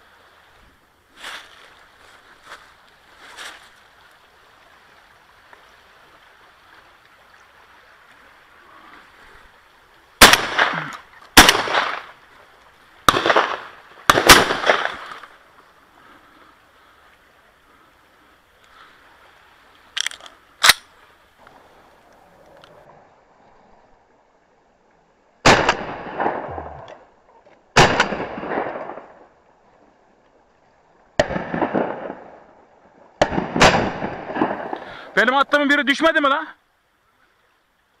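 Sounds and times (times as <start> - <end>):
shotgun shots: 10.2 - 12.1, 13.1 - 15.2, 25.5 - 26.8, 27.8 - 29.0, 33.2 - 34.8.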